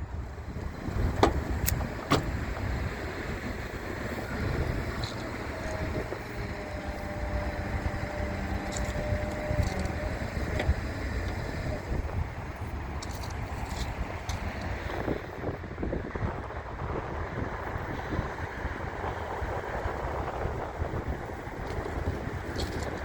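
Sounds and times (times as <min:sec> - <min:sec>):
outdoor background noise: 0:00.0 - 0:23.0
electric motor whining: 0:04.1 - 0:11.9.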